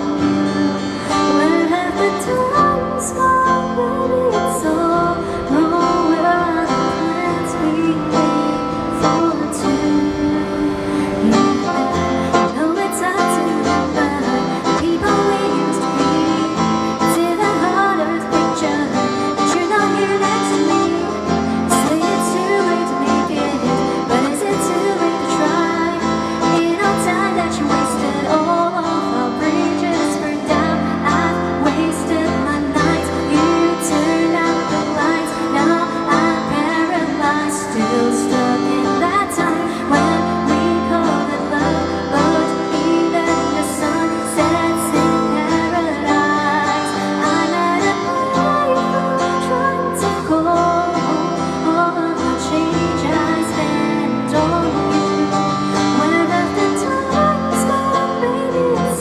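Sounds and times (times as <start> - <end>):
guitar accompaniment: 0.0 - 59.0
person singing: 0.0 - 59.0.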